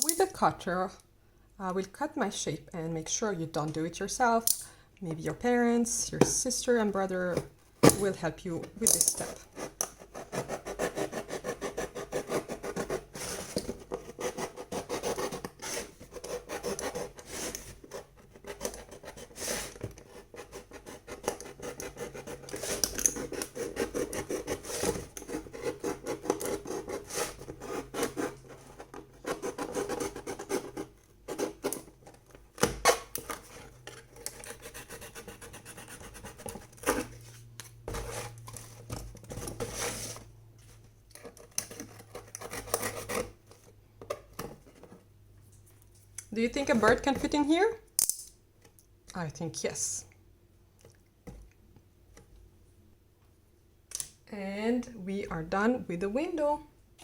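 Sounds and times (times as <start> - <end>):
box cutter scraping through cardboard: 9.2 - 31.9, 32.7 - 40.3, 41.7 - 43.4.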